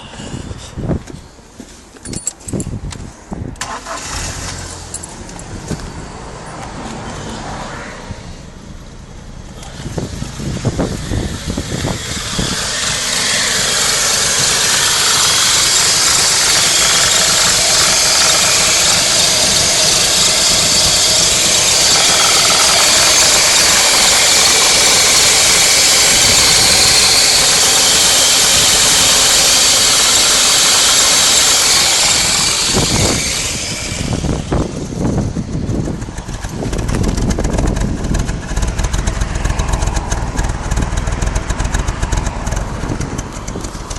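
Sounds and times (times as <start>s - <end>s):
car engine idling: 3.6s - 43.9s
hissing squeal: 11.1s - 34.4s.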